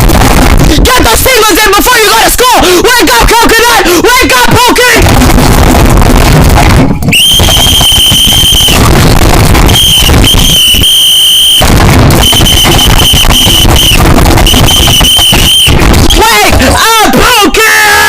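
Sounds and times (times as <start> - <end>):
distorted high-pitched electronic beeping: 0.0 - 2.1, 4.4 - 17.2.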